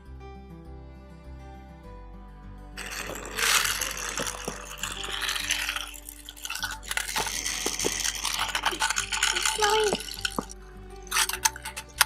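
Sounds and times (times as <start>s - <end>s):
quiet background music: 0.0s - 12.0s
toy trains clinking and rattling: 2.8s - 12.0s.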